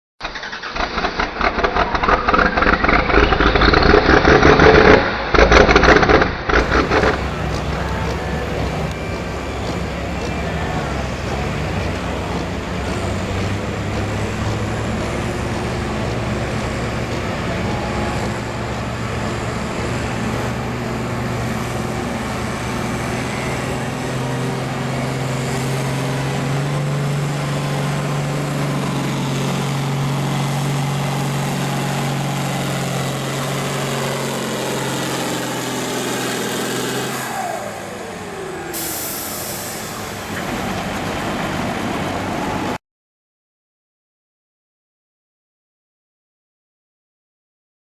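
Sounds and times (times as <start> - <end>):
tractor engine under load: 0.2 - 42.8
short hiss: 38.8 - 40.2.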